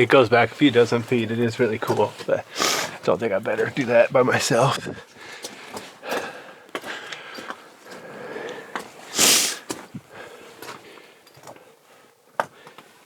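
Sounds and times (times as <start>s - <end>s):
scuffs and clicks of movement: 0.0s - 13.0s
person sniffing: 2.5s - 3.0s, 9.1s - 9.7s.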